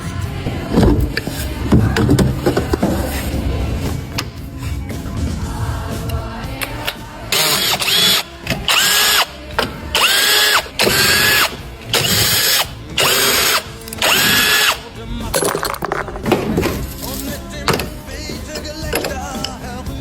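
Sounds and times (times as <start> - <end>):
power ratchet wrench whine: 6.7 - 14.9.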